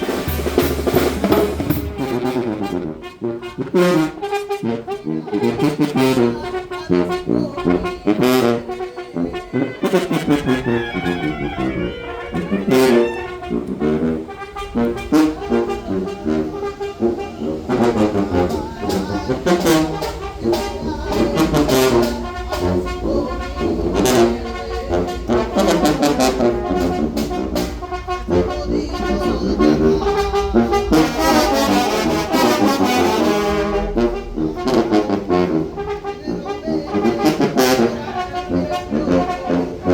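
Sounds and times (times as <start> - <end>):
drum and cymbal hits: 0.0 - 2.2
trombones and trumpets: 0.0 - 39.9.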